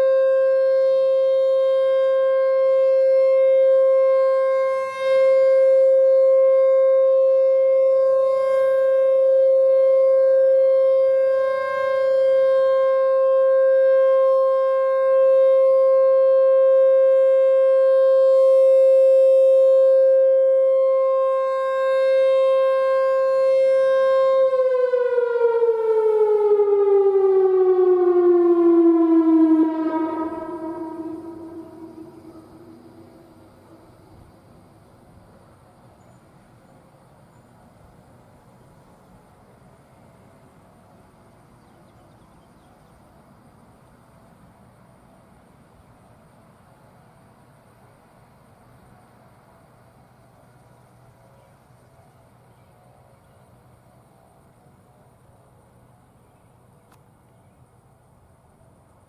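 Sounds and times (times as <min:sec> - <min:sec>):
electronic siren alert tone: 0:22.2 - 0:33.9.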